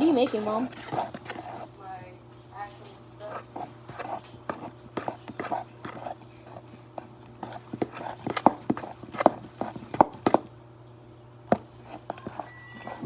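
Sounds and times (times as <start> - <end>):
slime stirring clicks and taps: 3.5 - 10.5.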